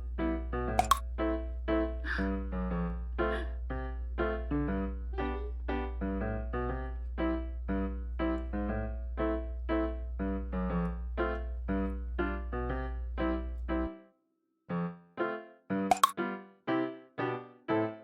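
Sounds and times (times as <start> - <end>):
keyboard tune: 0.8 - 1.0, 15.9 - 16.1.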